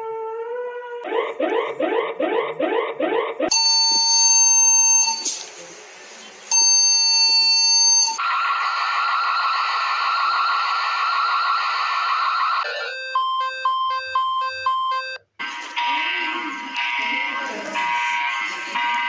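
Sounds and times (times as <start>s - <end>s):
steady multi-tone beep: 12.7s - 15.2s.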